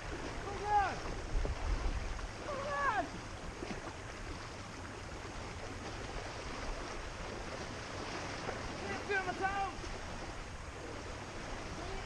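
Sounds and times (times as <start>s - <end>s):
wind rumble on microphone: 0.0s - 8.9s
river water rushing: 0.0s - 12.0s.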